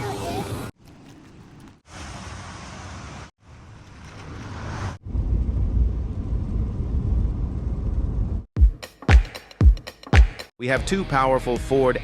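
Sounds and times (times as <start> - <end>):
engine and tyres rumbling: 0.0 - 8.5
road and wind noise: 0.0 - 8.5.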